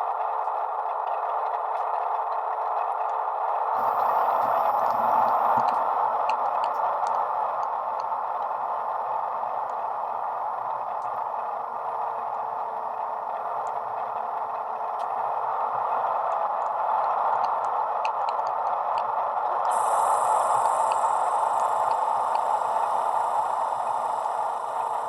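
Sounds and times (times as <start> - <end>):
model diesel engine drone: 19.7 - 25.0.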